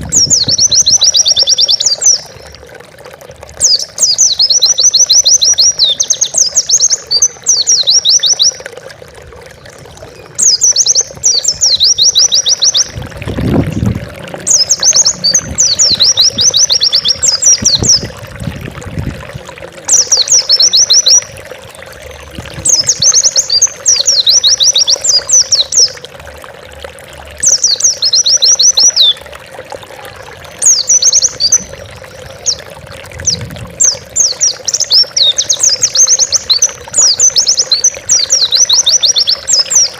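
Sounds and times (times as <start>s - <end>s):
bird high twittering song: 0.0s - 2.6s, 3.6s - 8.7s, 9.6s - 18.7s, 19.9s - 26.0s, 27.4s - 29.3s, 30.6s - 39.9s.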